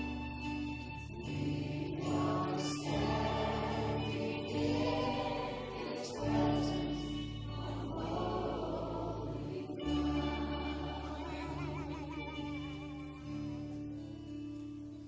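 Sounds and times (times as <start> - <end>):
group singing worship music: 0.0 - 14.7.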